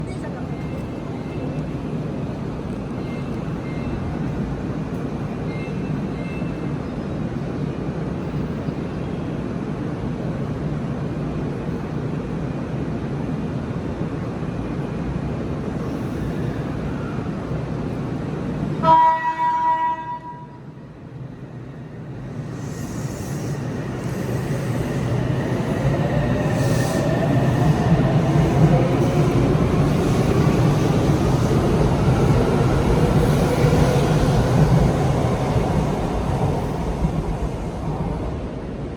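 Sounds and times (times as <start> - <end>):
train rumbling: 0.0 - 38.9
train horn blast: 18.8 - 20.6.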